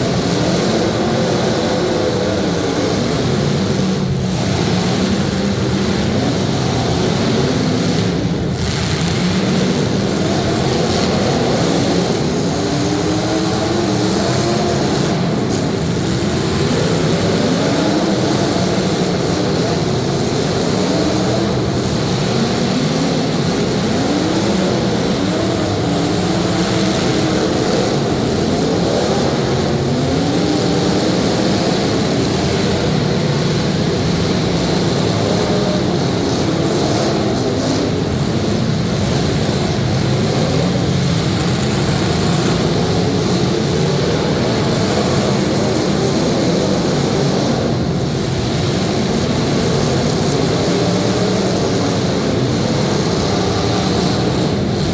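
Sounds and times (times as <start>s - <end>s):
car engines revving: 0.0s - 54.9s.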